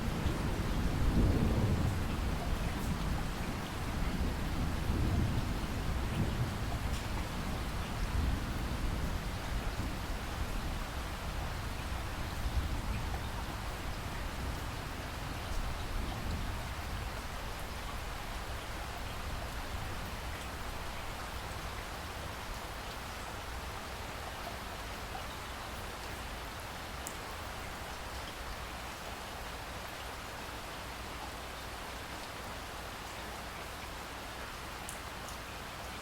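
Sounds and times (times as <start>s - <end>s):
thunder rumbling: 0.0s - 9.3s
steady rain falling: 0.0s - 36.0s.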